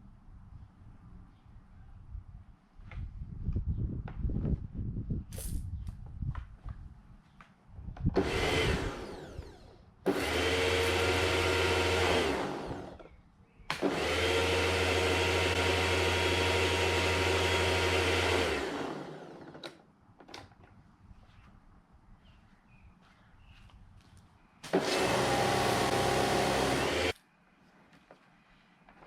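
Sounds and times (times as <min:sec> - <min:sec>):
pressure washer motor hum: 0:08.2 - 0:13.1, 0:13.7 - 0:19.7, 0:24.7 - 0:27.2.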